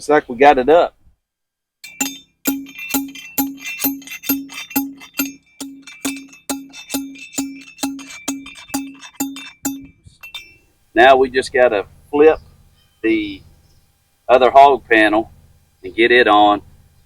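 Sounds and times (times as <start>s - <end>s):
music with wood-block strikes: 1.9s - 10.5s.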